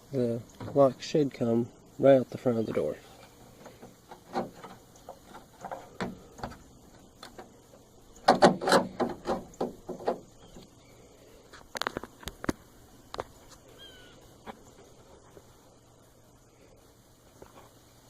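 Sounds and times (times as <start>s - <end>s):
door lock clicking and knocking: 8.2s - 10.3s
lock rattling: 8.2s - 10.6s.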